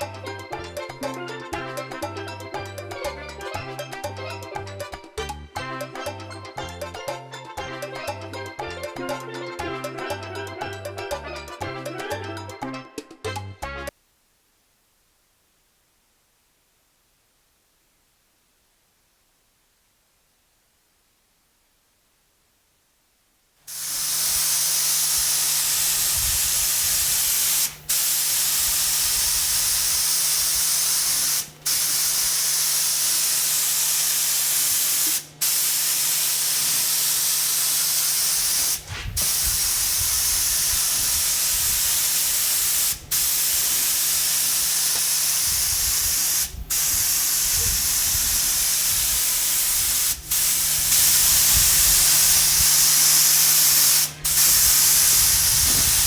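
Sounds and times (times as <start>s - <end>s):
loud steady hiss: 13.9s - 56.0s.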